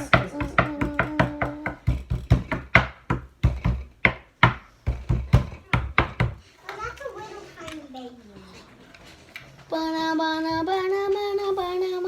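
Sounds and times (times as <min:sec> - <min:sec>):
sharp taps and knocks: 0:00.0 - 0:06.4.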